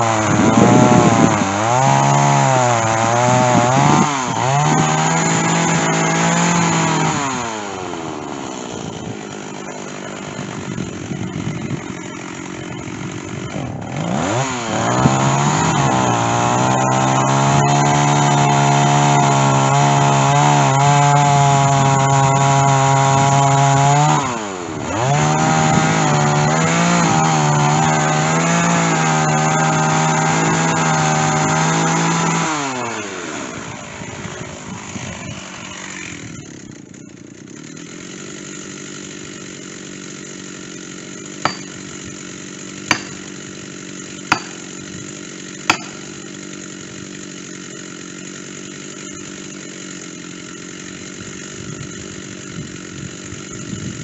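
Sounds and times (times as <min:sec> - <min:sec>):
chainsaw cutting wood: 0:00.0 - 0:54.0
chainsaw idling: 0:00.0 - 0:54.0
sharp strikes: 0:45.7 - 0:46.1.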